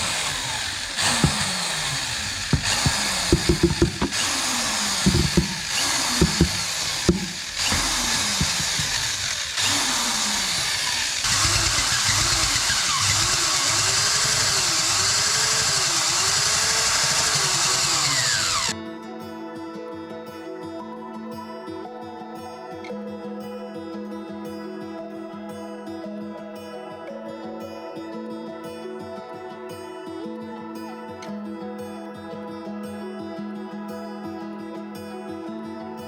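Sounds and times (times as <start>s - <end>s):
electric drill mixing grout: 0.0s - 18.8s
sharp knocks: 2.5s - 4.2s.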